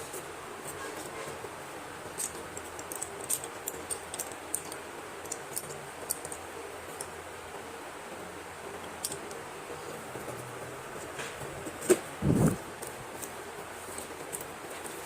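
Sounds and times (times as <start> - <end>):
pencils and packaging clicking: 2.1 - 7.1, 12.4 - 15.0.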